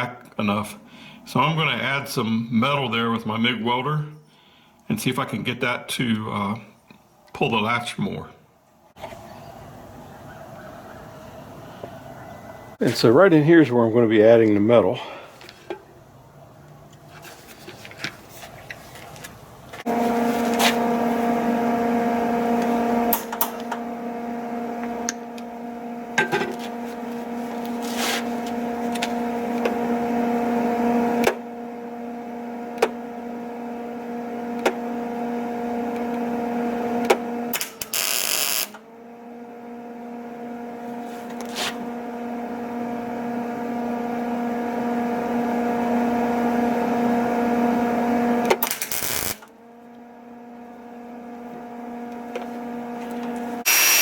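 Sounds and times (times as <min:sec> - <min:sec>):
welder buzzing: 0:19.3 - 0:54.0
arc crackling and popping: 0:37.5 - 0:38.8, 0:48.6 - 0:49.5.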